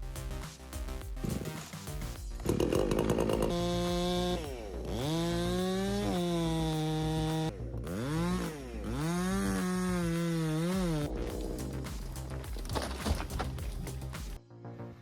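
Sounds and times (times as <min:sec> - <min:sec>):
chainsaw engine revving: 0:02.4 - 0:12.2.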